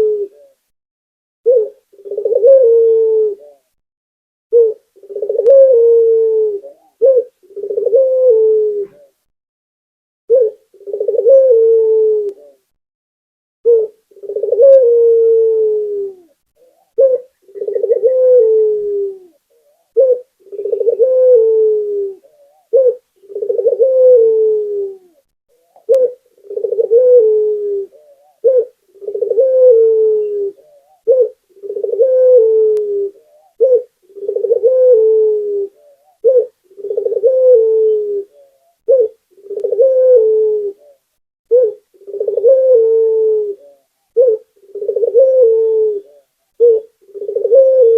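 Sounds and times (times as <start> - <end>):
dove cooing: 0.0 - 0.7, 1.4 - 3.8, 4.5 - 9.3, 10.3 - 12.7, 13.6 - 47.9.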